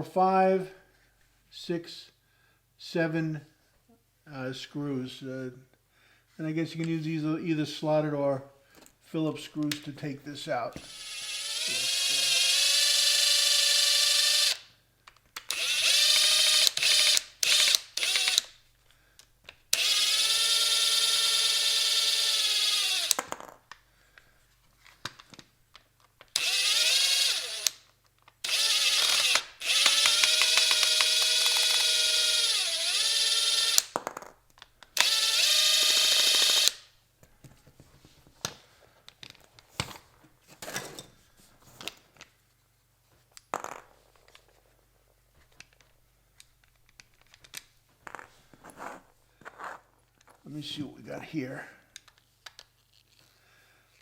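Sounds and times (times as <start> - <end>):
cordless drill motor whining: 10.8 - 14.7, 15.5 - 18.5, 19.7 - 23.2, 26.3 - 33.9, 35.0 - 36.8.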